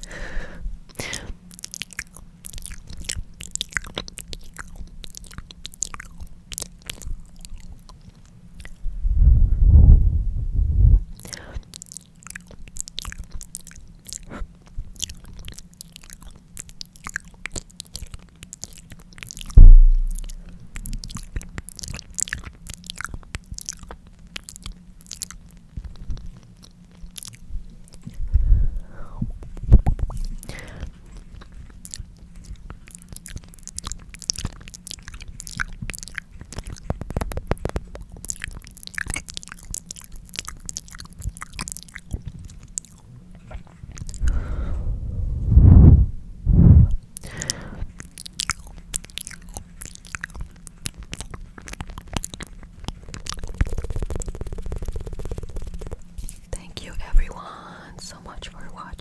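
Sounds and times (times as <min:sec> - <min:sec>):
wet lip clicks and smacks: 0:00.9 - 0:08.8, 0:11.1 - 0:28.5, 0:29.4 - 0:44.5, 0:47.2 - 0:59.0
loud low thump: 0:19.6 - 0:20.6.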